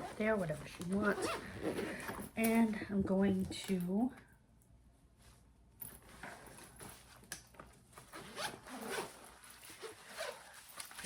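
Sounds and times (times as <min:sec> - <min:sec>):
zipper rasping: 0:00.0 - 0:02.3, 0:08.1 - 0:10.5.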